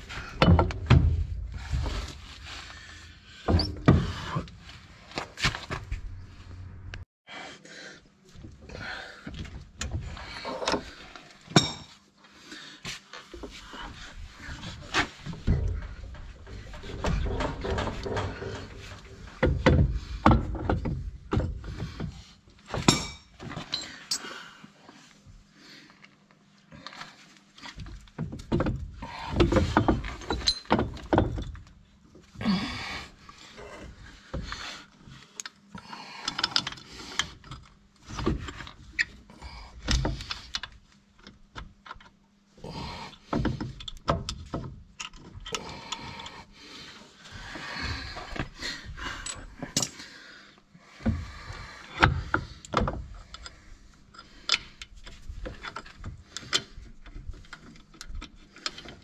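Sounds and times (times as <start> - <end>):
tools and steel parts clanking: 0.0 - 6.2, 13.4 - 24.3, 28.5 - 31.8, 48.3 - 50.1, 51.9 - 59.0
metal scraping: 14.4 - 19.6.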